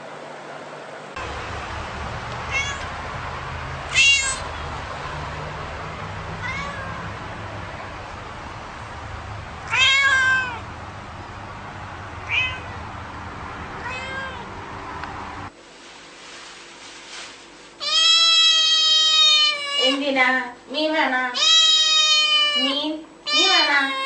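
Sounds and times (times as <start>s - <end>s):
steady low hum: 0.0s - 17.8s
cat meowing: 2.4s - 3.0s, 3.9s - 4.5s, 6.4s - 7.2s, 9.6s - 10.7s, 12.2s - 12.8s, 13.8s - 14.5s, 17.8s - 20.0s, 21.4s - 24.0s.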